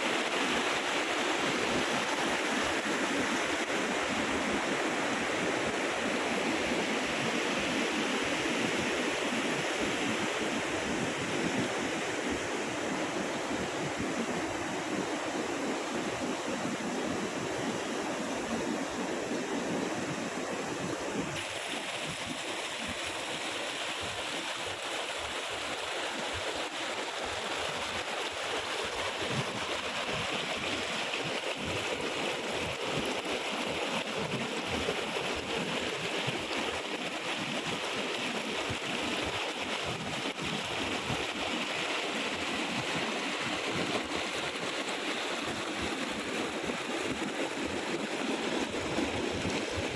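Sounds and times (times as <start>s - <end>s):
waterfall rushing: 21.4s - 31.5s.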